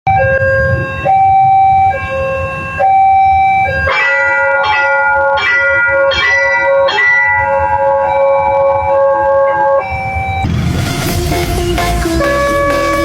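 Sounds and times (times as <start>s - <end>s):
two-tone crossing alarm: 0.1s - 10.7s, 11.4s - 13.0s
bell-like crossing chime: 3.9s - 7.8s
low rumble: 10.2s - 12.6s.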